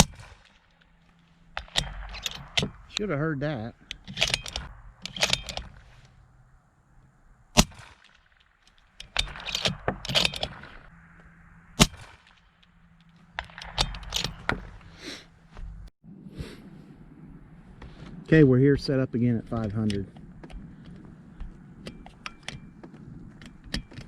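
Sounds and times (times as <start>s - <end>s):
clicks and knocks of handled gear: 0.0s - 3.1s, 3.8s - 6.2s, 7.6s - 10.9s, 12.6s - 14.9s, 19.5s - 24.0s
sharp cracks: 0.0s - 15.1s.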